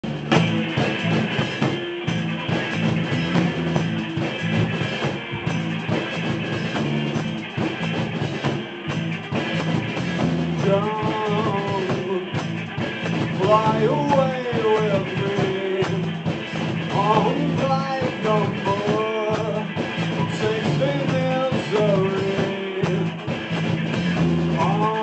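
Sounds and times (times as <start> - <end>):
bass guitar: 0.0 - 25.0
drum kit: 0.0 - 25.0
electric guitar: 0.0 - 25.0.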